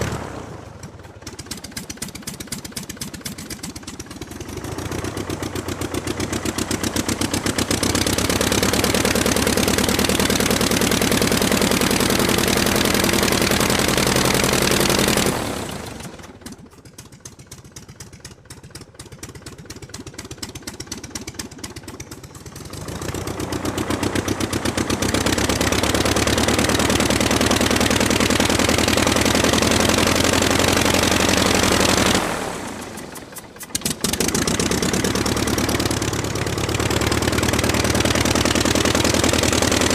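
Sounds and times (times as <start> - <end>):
aircraft piston engine revving: 0.0 - 39.9.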